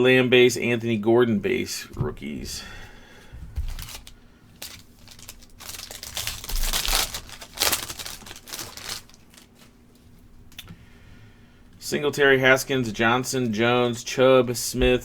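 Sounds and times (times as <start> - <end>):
plastic wrapper crinkling: 3.6 - 9.8.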